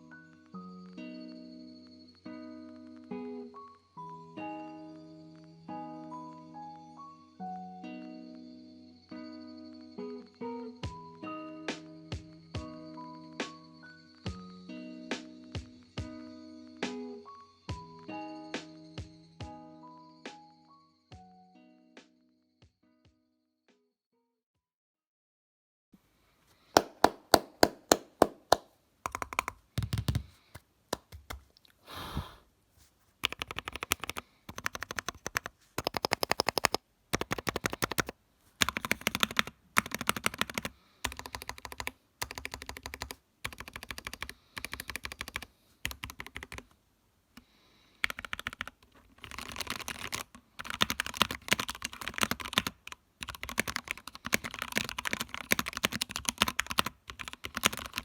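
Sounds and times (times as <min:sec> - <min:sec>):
mechanical keyboard typing: 0:26.9 - 0:30.3, 0:33.2 - 0:46.6, 0:48.0 - 0:58.0.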